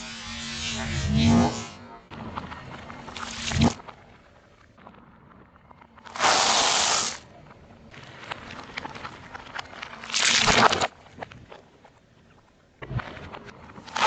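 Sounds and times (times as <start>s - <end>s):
crackling and popping: 2.1s - 14.0s
loud rushing spraying burst: 6.2s - 7.2s.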